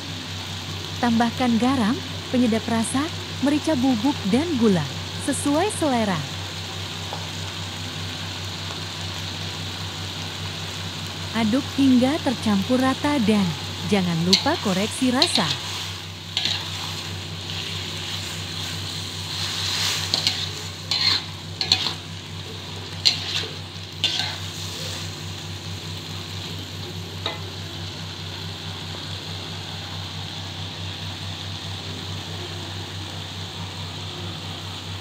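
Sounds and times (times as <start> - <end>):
vegetables sizzling in a pan: 0.0 - 35.0
utensil scraping a pan: 14.3 - 22.1, 23.0 - 25.1.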